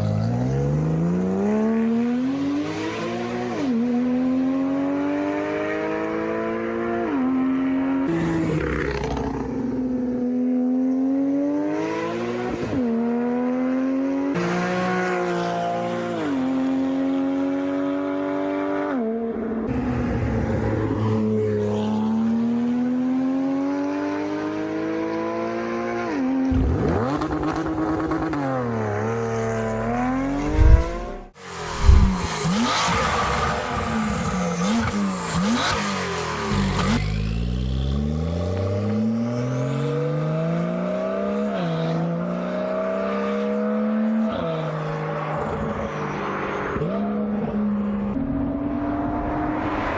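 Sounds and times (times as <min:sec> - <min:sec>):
car engine revving through gears: 0:00.0 - 0:49.9
exhaust cracks: 0:26.5 - 0:38.8
car engine rev blips: 0:26.5 - 0:41.6.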